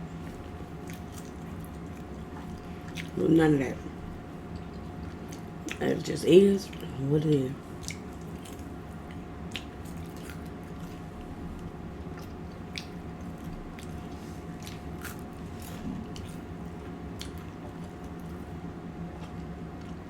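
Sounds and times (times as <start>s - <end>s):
person chewing food: 0.1s - 3.2s, 4.1s - 5.8s, 7.6s - 18.5s, 19.1s - 20.0s.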